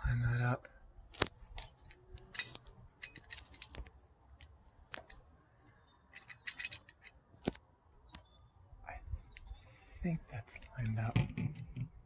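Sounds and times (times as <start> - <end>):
metal lock parts clicking and scraping: 1.1 - 8.2, 10.5 - 12.0.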